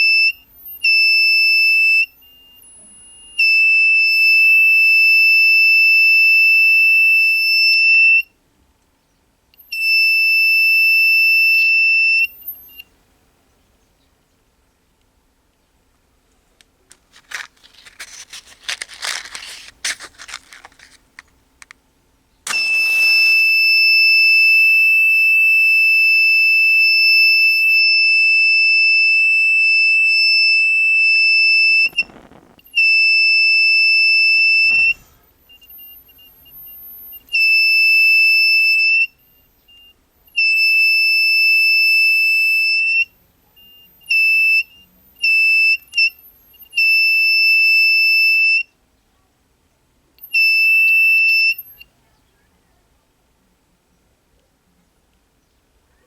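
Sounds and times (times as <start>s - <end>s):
scratchy clicking: 16.9s - 21.8s, 22.5s - 23.5s, 31.1s - 32.6s
high-pitched alarm buzzer tone: 22.5s - 25.3s.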